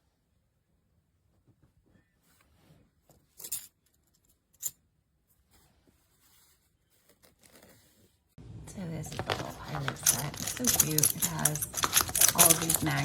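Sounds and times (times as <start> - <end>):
rustling: 5.2 - 13.0
plastic blocks clicking: 9.1 - 13.0.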